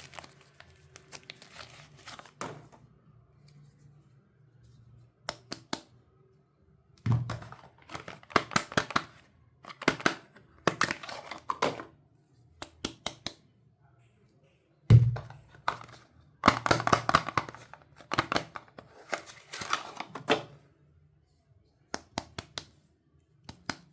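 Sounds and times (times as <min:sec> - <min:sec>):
wrapper crinkling: 0:00.0 - 0:02.4.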